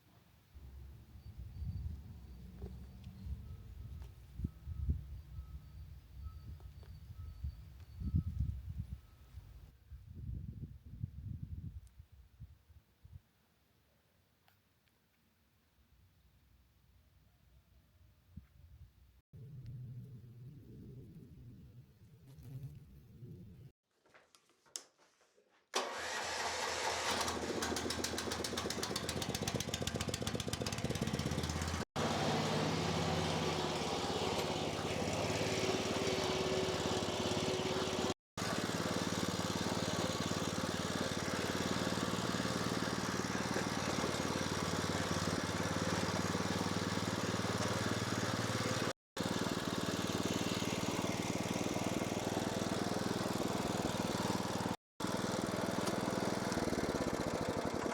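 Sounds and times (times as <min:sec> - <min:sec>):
small petrol engine running: 0:25.8 - 0:57.9.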